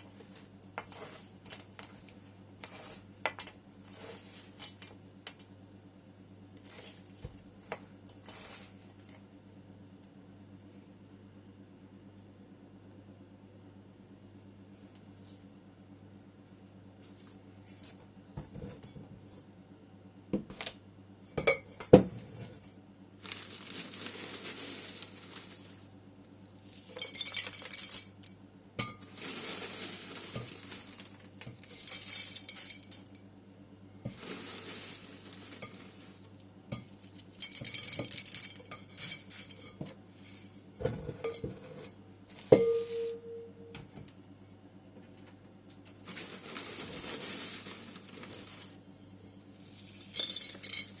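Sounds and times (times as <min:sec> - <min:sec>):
soil rustling and pouring: 0:23.2 - 0:28.2, 0:29.0 - 0:33.1, 0:34.0 - 0:37.2, 0:46.0 - 0:48.8
knocks and clinks on ceramic: 0:42.6 - 0:43.9.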